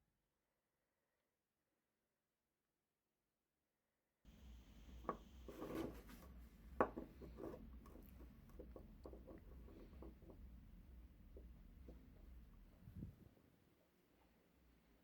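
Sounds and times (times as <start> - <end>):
low steady hum: 4.3 - 15.0
objects knocking and rubbing: 5.0 - 13.2.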